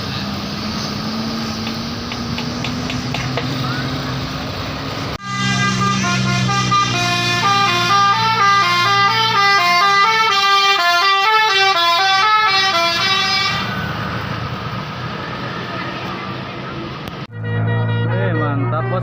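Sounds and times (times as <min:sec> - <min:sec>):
musical bus horn melody: 0:05.2 - 0:13.9, 0:17.3 - 0:19.0.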